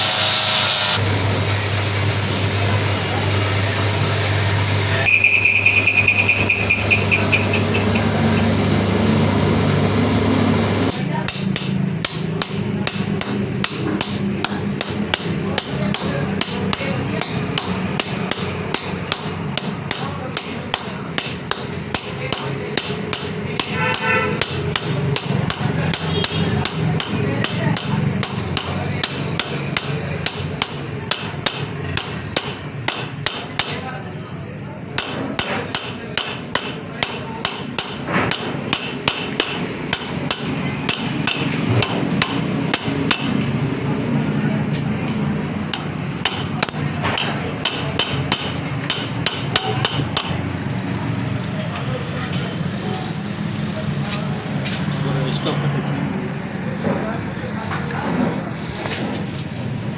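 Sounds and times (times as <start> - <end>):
hammer blows on metal: 10.9 - 34.0.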